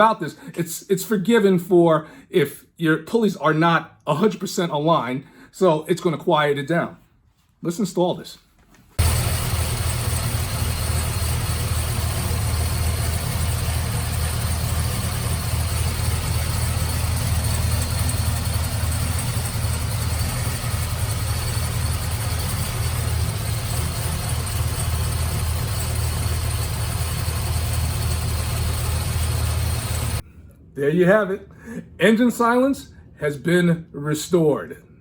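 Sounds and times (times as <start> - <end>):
car engine idling: 9.0 - 30.2.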